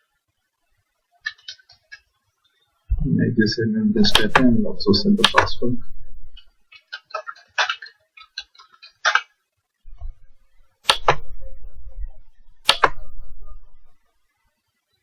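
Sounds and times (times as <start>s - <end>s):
low hum: 2.9s - 6.6s, 9.9s - 14.1s
keyboard keys tapping: 4.0s - 9.3s, 9.9s - 14.0s
mouse button double click: 12.4s - 14.0s.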